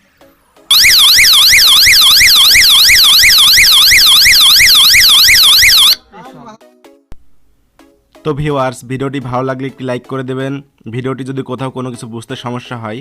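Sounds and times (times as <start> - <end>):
warbling electronic siren: 0.7 - 6.0.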